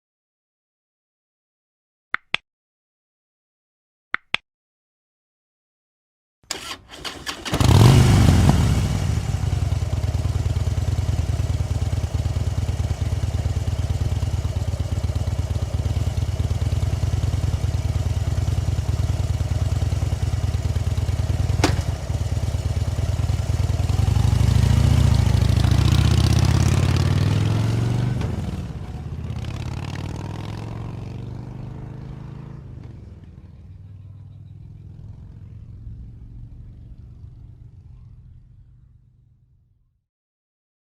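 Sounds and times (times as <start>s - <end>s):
sharp clicks: 4.2s - 4.4s
motorcycle engine starting: 6.5s - 38.9s
motorcycle engine revving: 6.5s - 39.0s
motorcycle engine idling: 7.3s - 27.4s, 32.8s - 39.4s.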